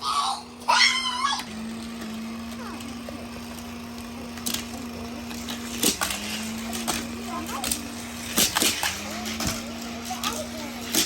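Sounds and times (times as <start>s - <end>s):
child squealing: 0.0s - 1.5s
small battery motor humming: 0.0s - 11.0s.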